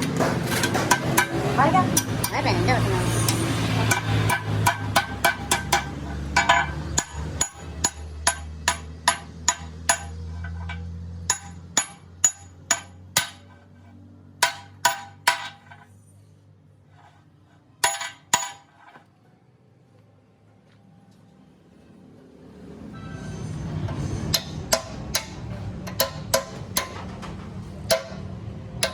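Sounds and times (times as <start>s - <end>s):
hammer striking metal: 0.0s - 13.6s, 14.4s - 15.9s, 17.8s - 18.9s, 23.8s - 28.9s.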